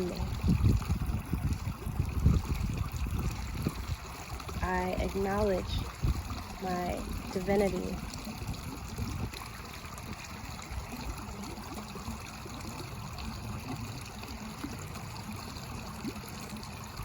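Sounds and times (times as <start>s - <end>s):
water trickling: 0.0s - 17.0s.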